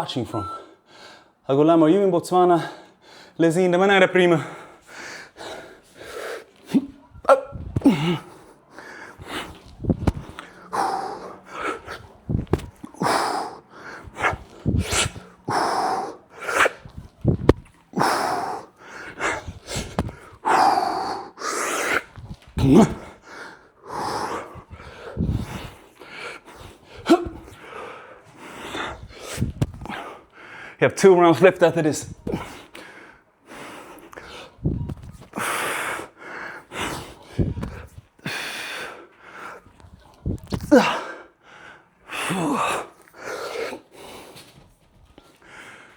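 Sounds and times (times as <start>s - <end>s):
man breathing hard: 0.5s - 1.4s, 2.6s - 3.4s, 4.2s - 30.8s, 32.1s - 44.6s, 45.2s - 45.9s
short low thuds: 7.2s - 8.0s, 9.7s - 10.4s, 16.9s - 17.7s.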